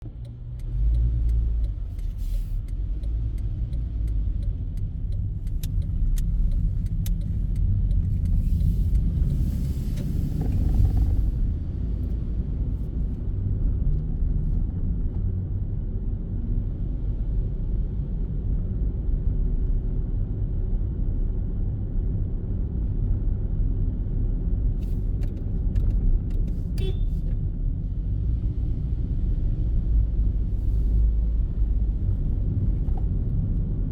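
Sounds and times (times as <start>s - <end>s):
car engine and tyre rumble: 0.0s - 33.9s.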